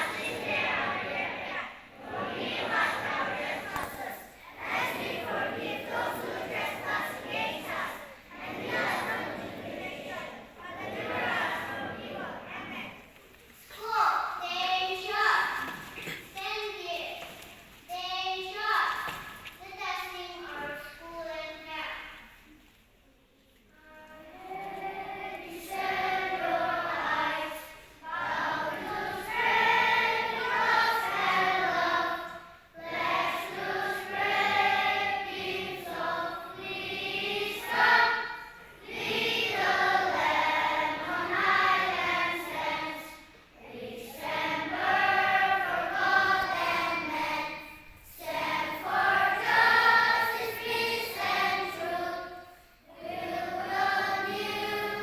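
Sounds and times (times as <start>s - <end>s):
group of voices singing: 0.0s - 12.6s, 24.4s - 55.0s.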